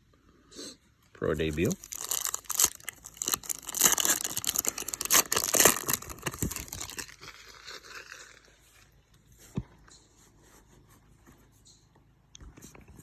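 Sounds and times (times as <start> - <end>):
wrapper tearing and crinkling: 1.4 - 8.8.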